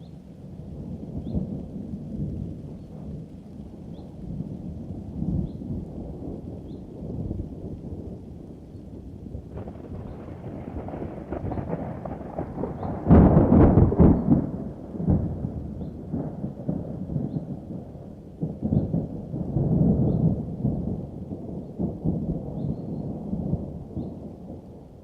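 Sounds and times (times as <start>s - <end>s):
thunder crash and rumble: 9.3s - 24.6s.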